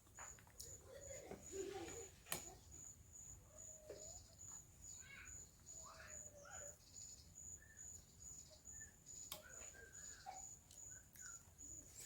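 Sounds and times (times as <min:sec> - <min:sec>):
cricket chirping: 0:02.4 - 0:12.0.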